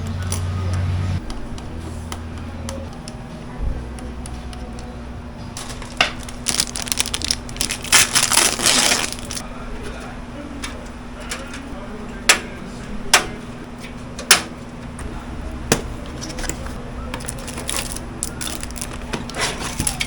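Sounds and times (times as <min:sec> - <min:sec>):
low steady hum: 0:00.0 - 0:20.0
hardware and packaging rustling: 0:05.5 - 0:09.4, 0:15.7 - 0:20.0.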